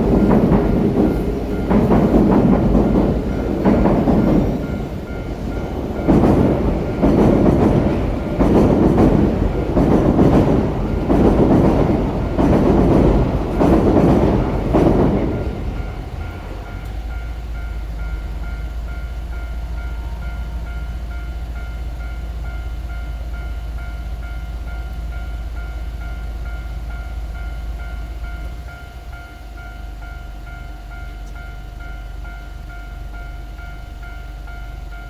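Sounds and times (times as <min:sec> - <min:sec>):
train wheels clattering over rails: 0:00.0 - 0:23.4
crossing warning bell ringing: 0:00.0 - 0:35.0.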